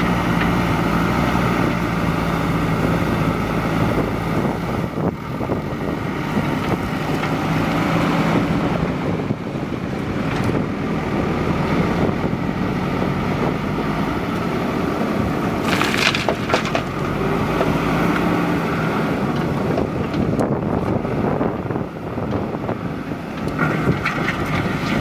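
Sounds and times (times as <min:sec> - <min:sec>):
loud crunching crackling burst: 0:15.6 - 0:17.2.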